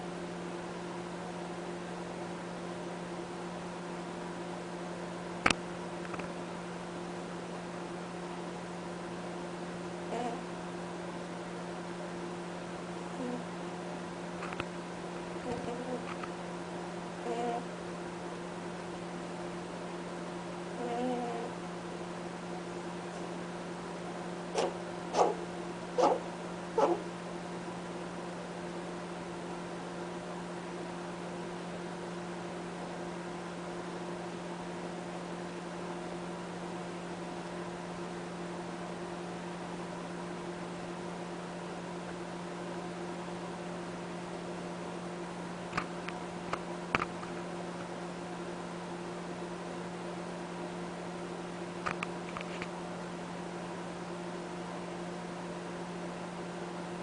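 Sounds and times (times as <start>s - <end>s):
steady electrical hum: 0.0s - 57.0s
rabbit snoring honks: 10.1s - 10.5s, 13.2s - 13.4s, 15.4s - 16.1s, 17.2s - 17.7s, 20.8s - 21.6s.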